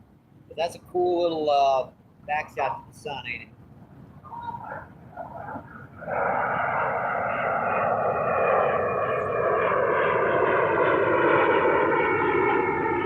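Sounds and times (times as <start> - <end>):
passing engine drone: 4.3 - 13.0.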